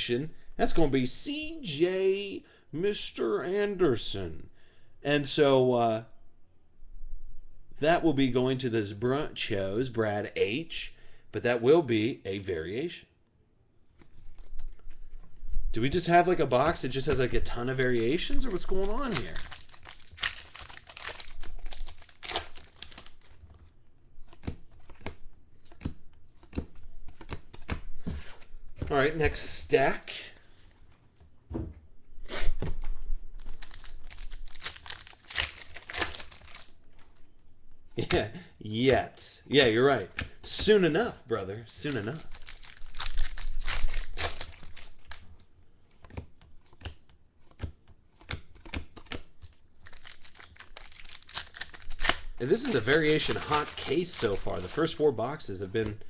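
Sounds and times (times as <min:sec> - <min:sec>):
cards being handled: 0:13.9 - 0:29.5, 0:32.6 - 0:37.3, 0:41.7 - 0:56.0
plastic wrappers crinkling and tearing: 0:16.9 - 0:25.1, 0:33.4 - 0:37.2, 0:41.7 - 0:45.4, 0:48.4 - 0:55.5.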